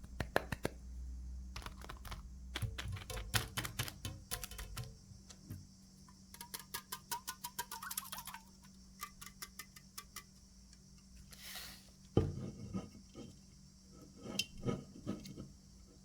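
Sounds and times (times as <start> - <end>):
small hard items clicking: 1.5 - 5.6, 6.2 - 10.4.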